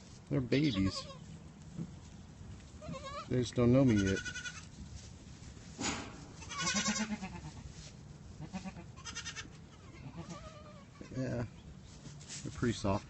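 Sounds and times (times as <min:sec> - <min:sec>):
goat kids bleating: 0:00.6 - 0:01.3, 0:02.6 - 0:04.8, 0:06.3 - 0:11.6.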